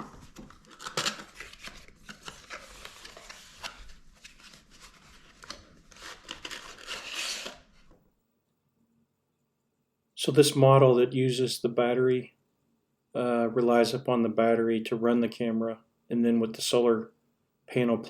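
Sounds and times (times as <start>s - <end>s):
packaging rustling and scraping: 0.0s - 7.9s.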